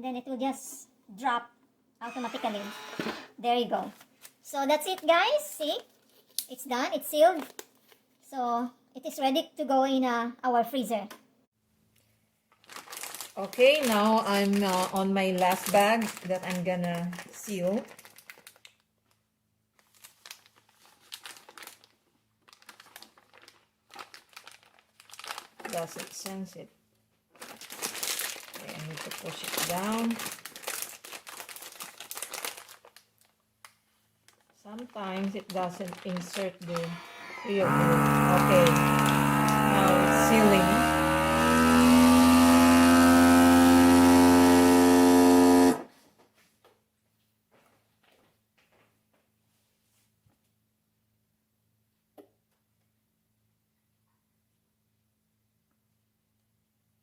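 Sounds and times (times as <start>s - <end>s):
vacuum sealer pump humming: 2.0s - 3.4s, 36.7s - 45.9s
plastic bag crinkling: 12.5s - 26.6s, 27.3s - 45.7s.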